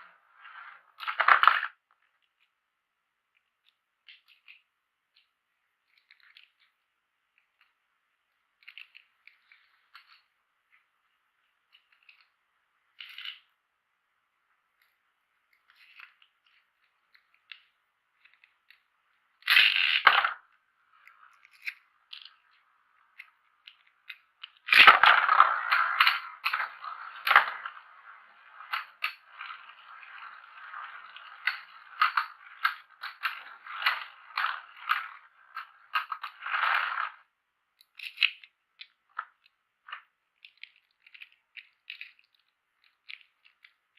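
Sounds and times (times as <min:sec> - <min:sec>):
plastic clatter and scraping: 0:00.0 - 0:02.2, 0:19.4 - 0:37.3
plastic parts clicking and tapping: 0:03.3 - 0:06.8, 0:14.7 - 0:43.9.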